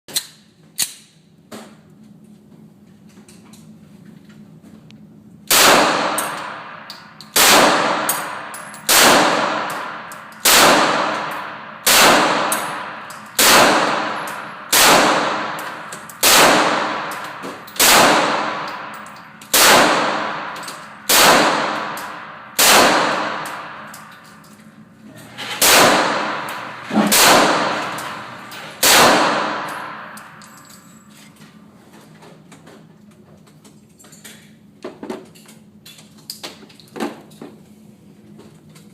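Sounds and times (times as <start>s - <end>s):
pistol shots with echo: 5.5s - 24.1s, 25.6s - 30.4s.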